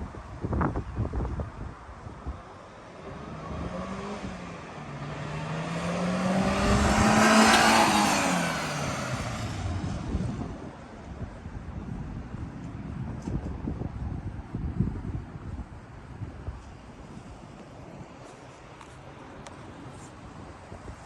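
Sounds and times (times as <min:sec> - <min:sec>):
truck engine driving past: 0:03.5 - 0:10.6
tyre noise: 0:05.3 - 0:10.5.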